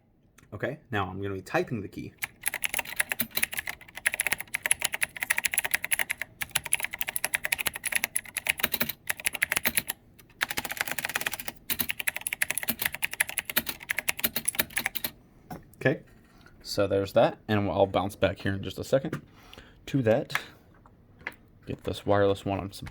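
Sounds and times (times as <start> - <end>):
mechanical keyboard typing: 2.2 - 15.2.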